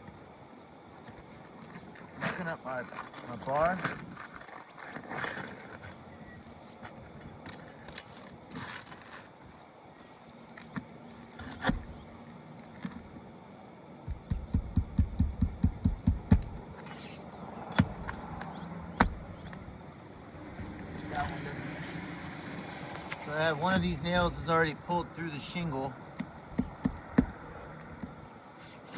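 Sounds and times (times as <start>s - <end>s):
pry bar scraping shingles: 6.8s - 13.1s, 14.1s - 19.8s, 25.9s - 28.9s.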